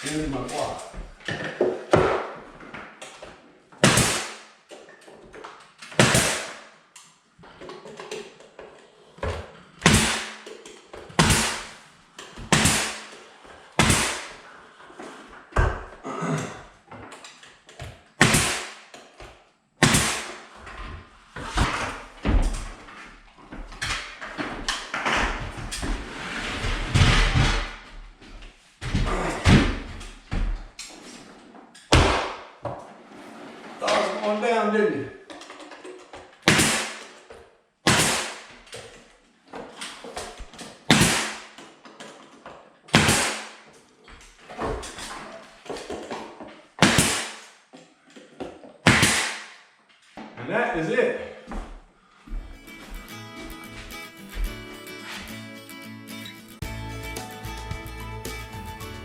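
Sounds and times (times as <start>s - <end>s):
nail gun bangs: 3.8s - 4.5s, 5.9s - 6.7s, 9.8s - 10.5s, 11.2s - 11.8s, 12.5s - 13.2s, 13.8s - 14.4s, 18.2s - 18.9s, 19.8s - 20.5s, 36.4s - 37.2s, 37.8s - 38.6s, 40.9s - 41.6s, 42.9s - 43.6s, 46.8s - 47.5s, 48.8s - 49.6s.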